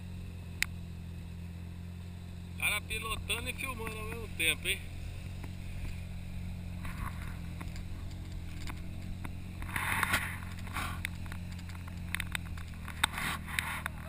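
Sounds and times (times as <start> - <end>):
atv engine idling: 0.0 - 14.0
rushing crunching bursts: 3.8 - 14.0
scattered clicks: 10.0 - 14.0.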